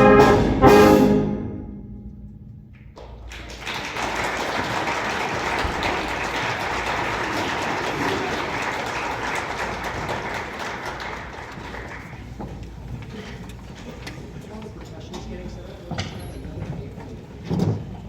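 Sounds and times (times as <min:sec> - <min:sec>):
brass band playing: 0:00.0 - 0:02.5
crowd applauding: 0:03.0 - 0:12.8.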